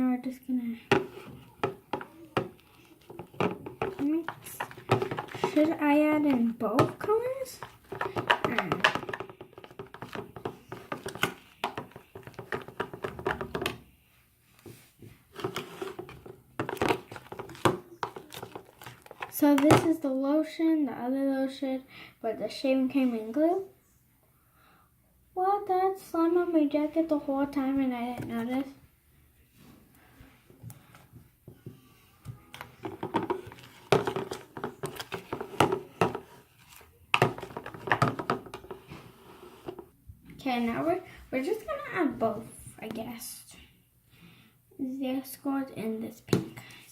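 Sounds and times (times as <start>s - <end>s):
slime stirred in a bowl: 0.8s - 13.8s, 14.6s - 19.8s, 32.4s - 43.1s.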